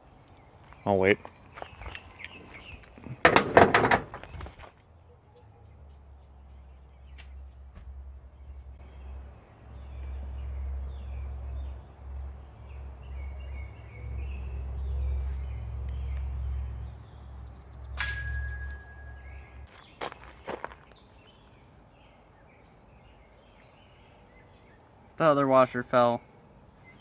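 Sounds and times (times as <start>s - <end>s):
small birds chirping: 0.0s - 3.2s, 4.2s - 27.0s
sharp metallic clink: 18.0s - 19.6s.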